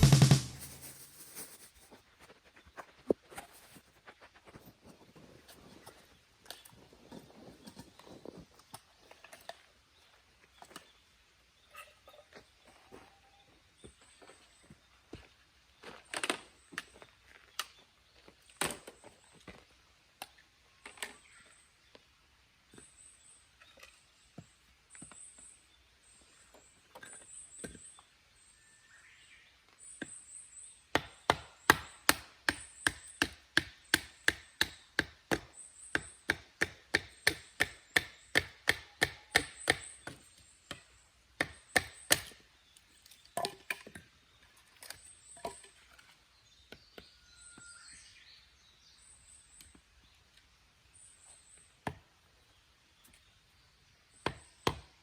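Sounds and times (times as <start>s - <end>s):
wood being chopped: 30.9s - 40.8s, 41.4s - 42.4s, 54.2s - 54.9s.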